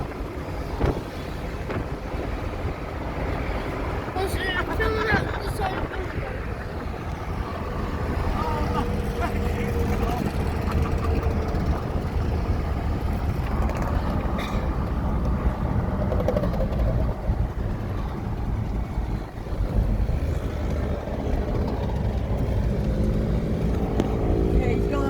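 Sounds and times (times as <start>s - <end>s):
road noise: 0.0s - 25.0s
vehicle engine rumble: 0.0s - 25.0s.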